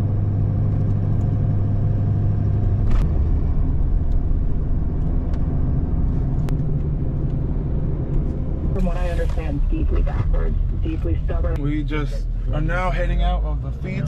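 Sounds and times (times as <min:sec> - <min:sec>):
vehicle engine and road drone: 0:00.0 - 0:14.0.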